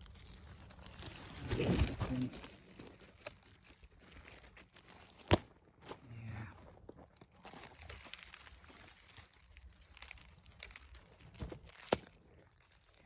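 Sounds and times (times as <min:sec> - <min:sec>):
leaves and twigs rustling: 0:00.0 - 0:13.0
twig snapping: 0:07.8 - 0:13.0.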